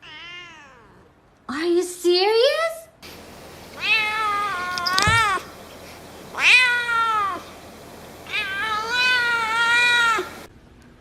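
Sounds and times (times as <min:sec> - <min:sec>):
cat meowing: 0:00.0 - 0:01.0, 0:03.8 - 0:05.5, 0:06.3 - 0:07.5, 0:08.2 - 0:10.5.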